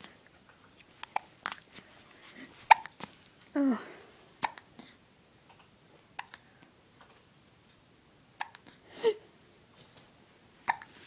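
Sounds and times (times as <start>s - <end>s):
baby hiccuping: 1.0s - 1.7s, 2.7s - 3.0s, 4.4s - 4.7s, 6.2s - 6.4s, 8.4s - 9.2s, 10.6s - 10.9s.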